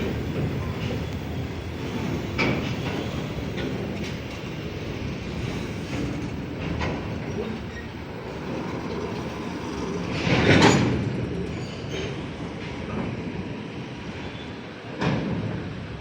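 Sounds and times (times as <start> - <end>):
freight train rumbling past: 0.0 - 16.0
wheel clacks over rail joints: 0.1 - 13.2.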